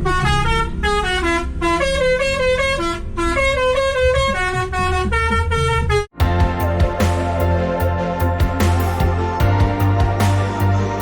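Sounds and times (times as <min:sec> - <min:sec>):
music with a beat: 0:06.2 - 0:11.0.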